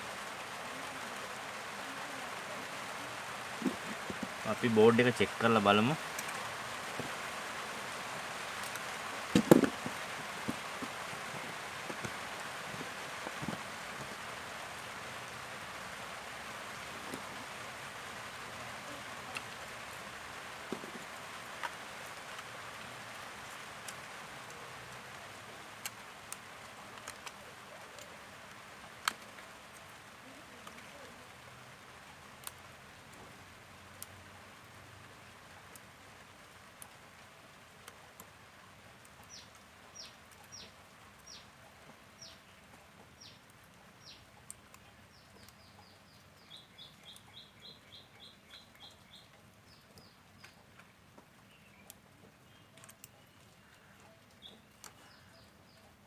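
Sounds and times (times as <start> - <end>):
soft hiss: 0.0 - 56.0
light clicks and taps: 25.8 - 28.1
bird chirping: 44.0 - 56.0.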